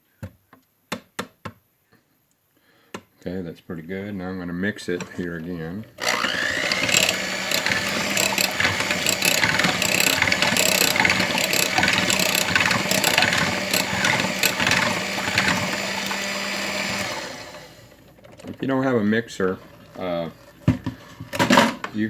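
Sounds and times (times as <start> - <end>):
kitchen mixer motor hum: 6.0 - 18.2
clicks and knocks: 6.6 - 16.3.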